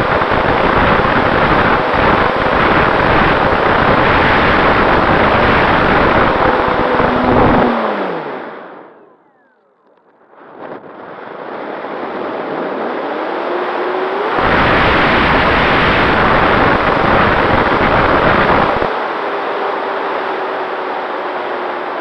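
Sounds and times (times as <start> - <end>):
wind buffeting microphone: 0.0 - 8.5, 14.2 - 19.0
model airplane motor whine: 0.0 - 22.0.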